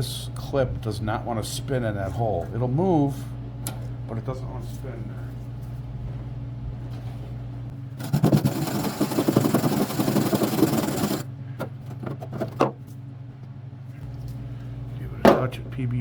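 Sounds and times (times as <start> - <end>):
wire brush scrubbing steel: 8.0 - 11.2.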